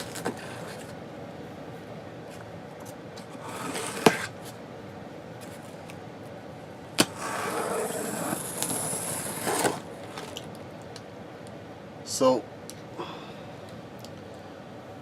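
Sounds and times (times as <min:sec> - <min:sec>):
packaging scraping and rustling: 0:00.0 - 0:00.9, 0:07.3 - 0:10.5.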